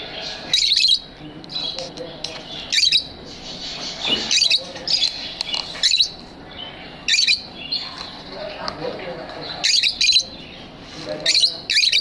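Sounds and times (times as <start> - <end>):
soft bird twittering: 0.0 - 8.6, 9.4 - 12.0
shrill bird chirps: 0.2 - 1.8, 2.6 - 8.0, 9.6 - 10.6, 11.3 - 12.0.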